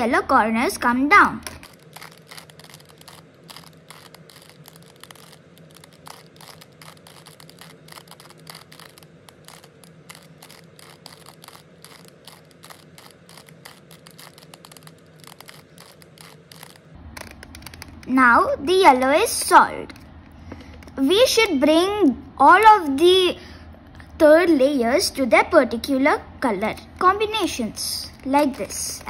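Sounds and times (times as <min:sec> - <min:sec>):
faint steady hum: 0:00.0 - 0:29.0
puzzle cube layers clicking: 0:01.2 - 0:18.1.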